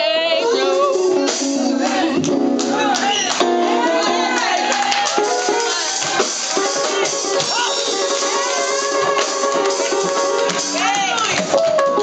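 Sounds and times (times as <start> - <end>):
person singing: 0.0 - 5.9
church band playing gospel music: 0.0 - 12.0.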